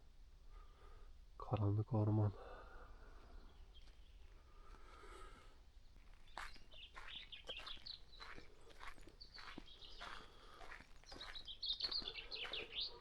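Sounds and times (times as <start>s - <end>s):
faint small bird chirps: 6.2s - 10.2s, 11.0s - 13.0s.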